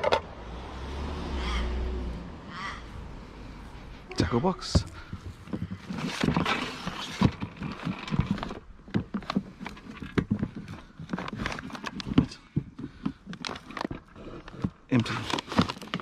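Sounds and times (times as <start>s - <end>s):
tackle box clicks and knocks: 4.7s - 16.0s.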